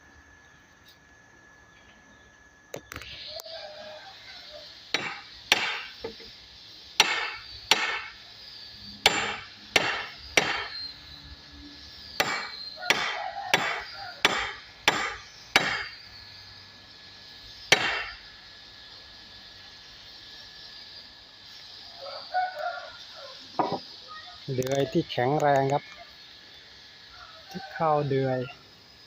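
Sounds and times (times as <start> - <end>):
hammer striking wood: 4.9 - 6.2, 7.0 - 8.1, 9.0 - 10.8, 12.2 - 15.9, 17.7 - 18.2, 23.6 - 23.8.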